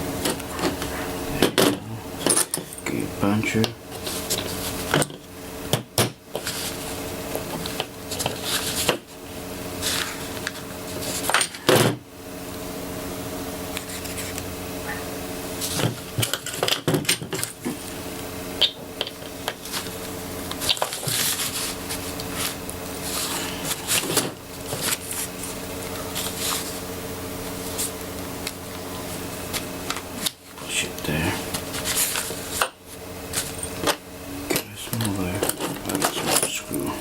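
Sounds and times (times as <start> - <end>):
low hum: 17.4 - 37.0.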